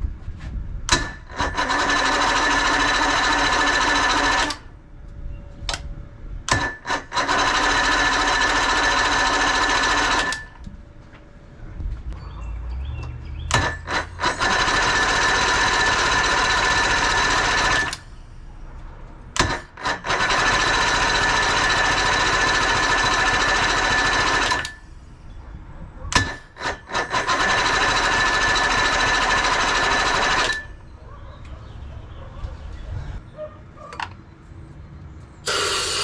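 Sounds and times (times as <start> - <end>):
outboard engine starter cranking: 0.9 - 4.7, 6.5 - 10.6, 13.5 - 18.0, 19.4 - 24.8, 26.2 - 30.7.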